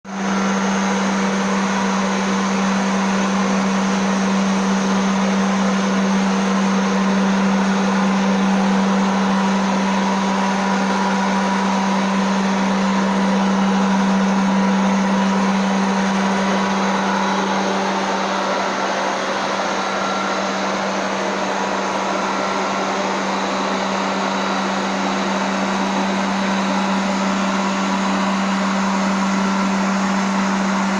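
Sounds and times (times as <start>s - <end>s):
robotic vacuum cleaner running: 0.1s - 30.9s.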